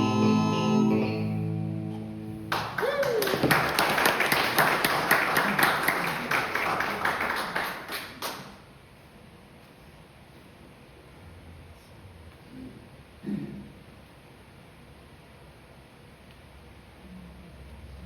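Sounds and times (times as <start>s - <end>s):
song ending: 0.0s - 2.5s
short cheer: 2.5s - 3.8s
audience clapping: 2.5s - 8.7s.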